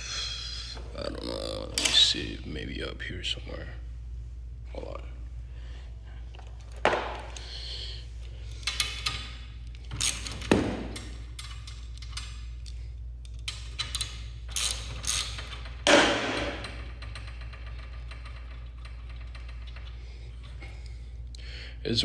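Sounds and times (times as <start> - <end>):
steady low hum: 0.0 - 22.0
knocks and clanks on metal hardware: 6.8 - 7.4, 10.0 - 11.6, 13.6 - 19.8.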